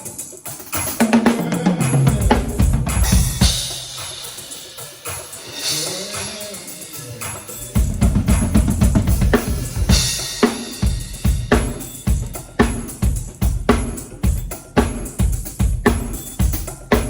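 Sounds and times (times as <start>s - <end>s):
cymbals: 0.0s - 17.0s
bass drum: 1.8s - 4.1s, 7.6s - 17.0s.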